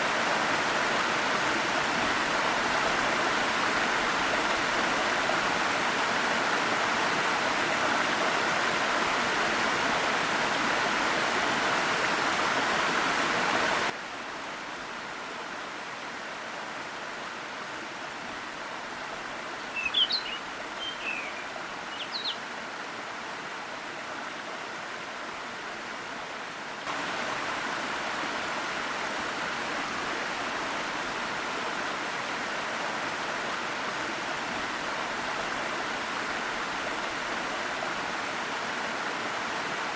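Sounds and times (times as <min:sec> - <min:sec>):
waterfall and stream rushing: 0:00.0 - 0:39.9
small bird chirping: 0:19.8 - 0:22.4.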